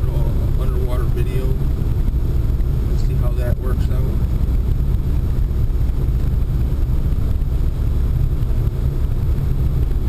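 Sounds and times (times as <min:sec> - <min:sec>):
road and engine rumble in car: 0:00.0 - 0:10.0.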